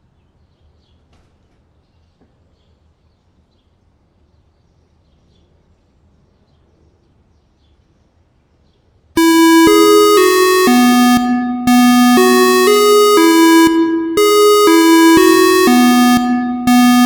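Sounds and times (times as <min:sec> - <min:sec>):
electronic alert melody: 0:09.2 - 0:17.0.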